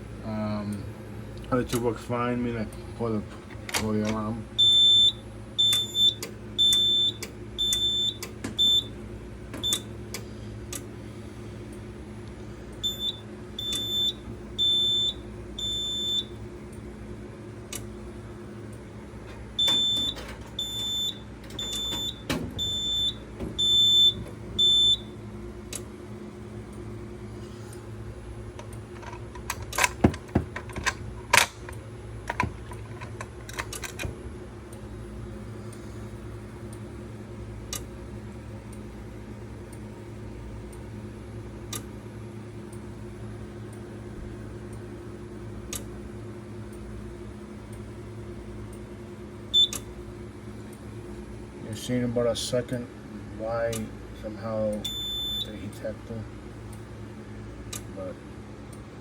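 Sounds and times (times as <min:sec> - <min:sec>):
sharp clicks and knocks: 0:28.6 - 0:34.2.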